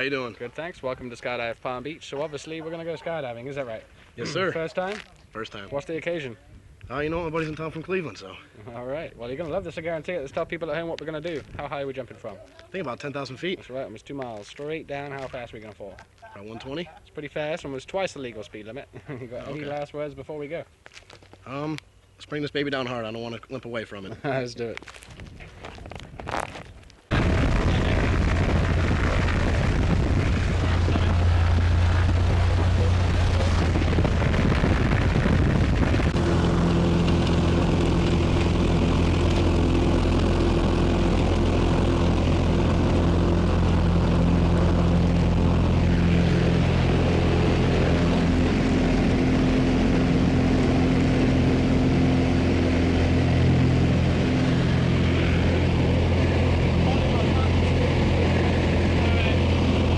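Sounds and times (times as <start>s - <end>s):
propeller airplane engine drone: 27.1s - 59.9s.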